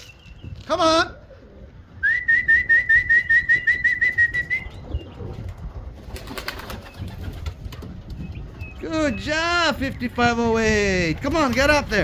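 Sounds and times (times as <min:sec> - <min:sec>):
warbling pigeon call whistle: 0:02.0 - 0:05.1.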